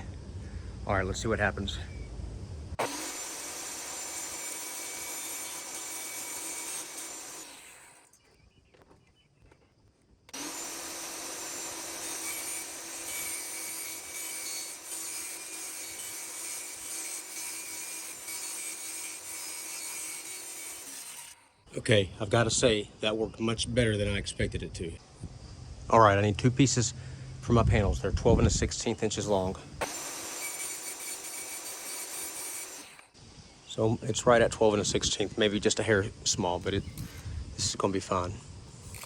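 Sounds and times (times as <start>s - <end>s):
table saw cutting aluminum: 2.8s - 8.2s, 10.3s - 21.6s, 29.8s - 33.1s, 38.8s - 39.0s.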